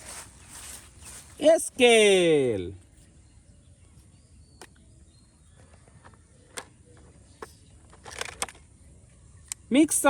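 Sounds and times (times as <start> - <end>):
plastic toys clicking: 5.7 - 8.7.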